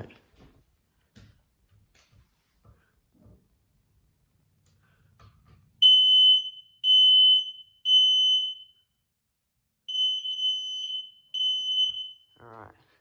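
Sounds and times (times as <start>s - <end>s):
smoke alarm beeping: 5.8s - 9.1s, 9.8s - 12.4s.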